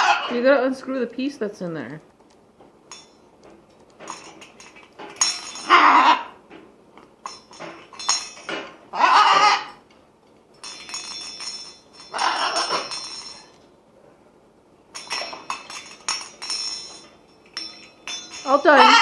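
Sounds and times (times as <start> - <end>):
toy metal clinking and jingling: 4.0 - 6.0, 7.2 - 8.6, 10.6 - 13.6, 14.9 - 19.0
macaw calls: 8.9 - 9.8.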